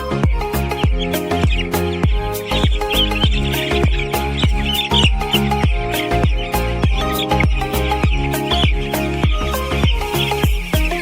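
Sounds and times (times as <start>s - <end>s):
chicks peeping: 0.0s - 11.0s
music with deep drum hits: 0.0s - 11.0s.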